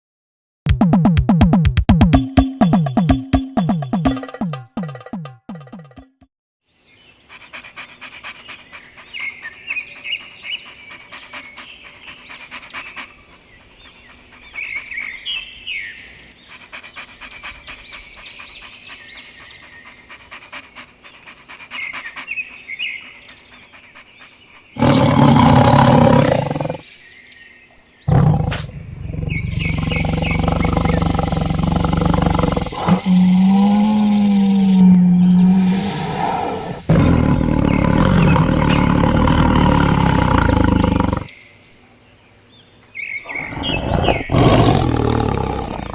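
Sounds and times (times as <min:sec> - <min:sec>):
high chirps: 0:02.0 - 0:06.1, 0:29.3 - 0:38.8
big cat roaring: 0:24.8 - 0:26.8, 0:28.1 - 0:41.3, 0:43.3 - 0:45.9.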